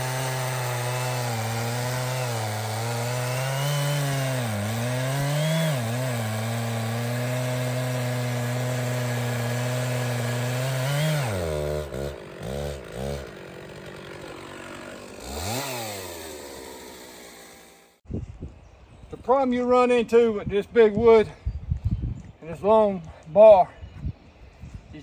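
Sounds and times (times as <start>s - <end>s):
chainsaw cutting log: 0.0s - 18.0s.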